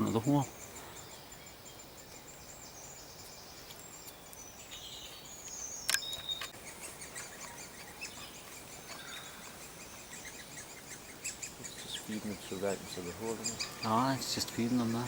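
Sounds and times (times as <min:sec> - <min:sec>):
woodpecker nestlings begging chirps: 0:00.0 - 0:15.0
sharp click: 0:05.9 - 0:06.6.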